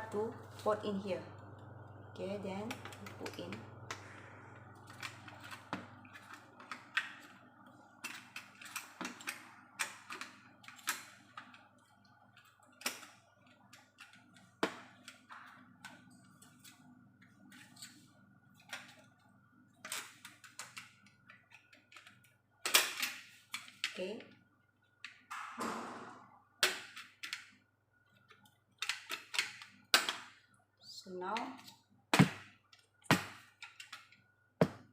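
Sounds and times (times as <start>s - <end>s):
plastic parts clicking: 26.6s - 30.4s, 32.7s - 34.2s.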